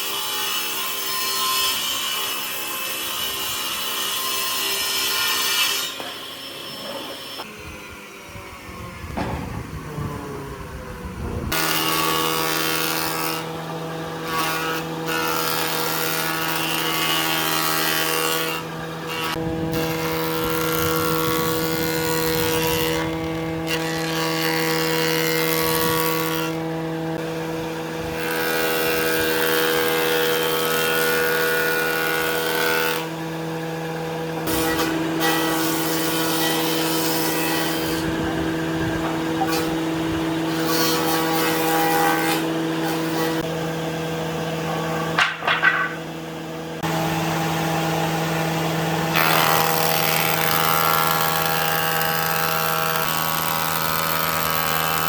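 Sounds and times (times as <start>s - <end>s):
electric power tool motor running: 7.4s - 44.7s, 45.9s - 55.0s
sharp knocks: 44.6s - 46.1s.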